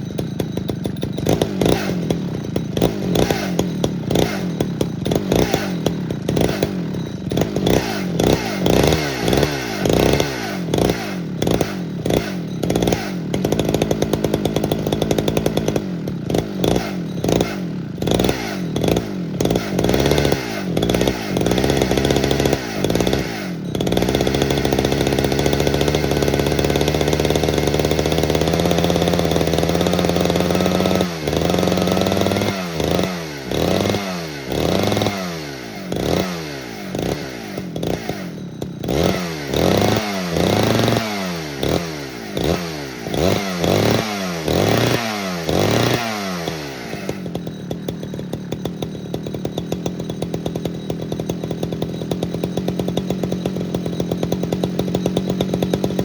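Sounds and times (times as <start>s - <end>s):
chainsaw engine revving: 0.0s - 56.0s.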